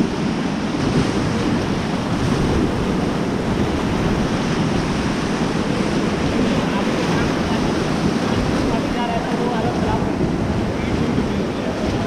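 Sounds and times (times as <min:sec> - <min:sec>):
river rapids rushing: 0:00.0 - 0:12.0
wind buffeting microphone: 0:00.0 - 0:12.0.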